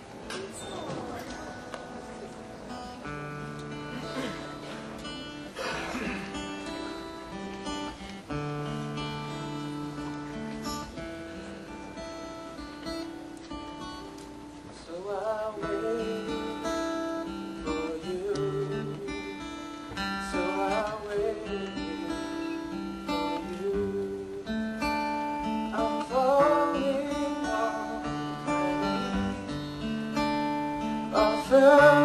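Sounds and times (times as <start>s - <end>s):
slow acoustic guitar music: 0.0s - 32.0s.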